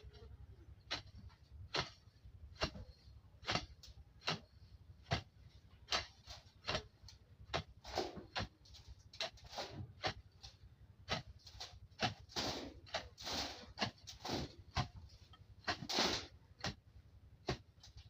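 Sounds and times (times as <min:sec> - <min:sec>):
hand hoe chopping into soil: 0:00.0 - 0:18.0
short scraping rustle: 0:07.8 - 0:10.6, 0:11.4 - 0:16.4.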